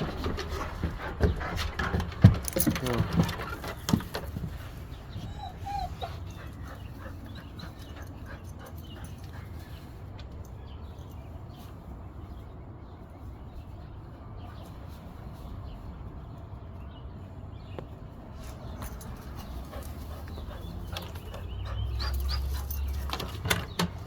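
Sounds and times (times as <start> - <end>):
dog whining: 5.1 - 6.6.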